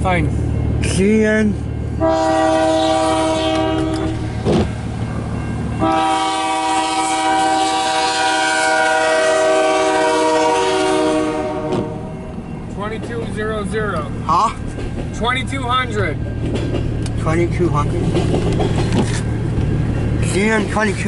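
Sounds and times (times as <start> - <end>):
locomotive air horn blasts: 2.0 - 4.4, 5.8 - 12.2.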